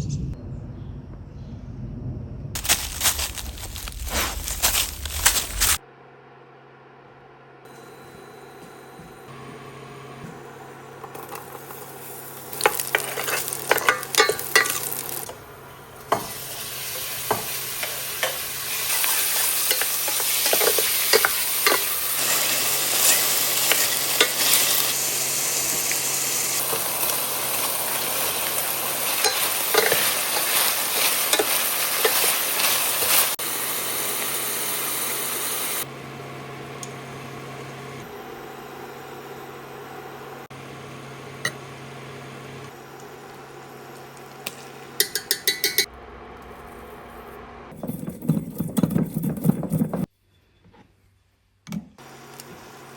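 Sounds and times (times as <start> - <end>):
food sizzling in a pan: 2.6 - 5.8, 11.2 - 35.9
utensil scraping a pan: 12.6 - 15.4, 16.0 - 25.1, 26.6 - 33.4, 47.7 - 50.1.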